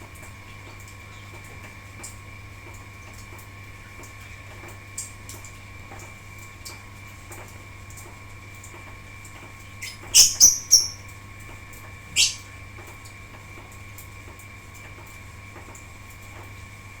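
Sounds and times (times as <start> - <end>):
lovebirds chirping shrilly: 9.8 - 11.0, 12.2 - 12.4.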